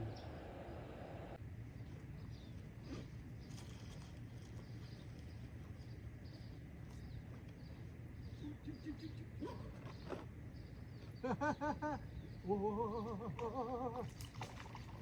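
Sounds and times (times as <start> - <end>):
steady low rumble: 0.0 - 9.5.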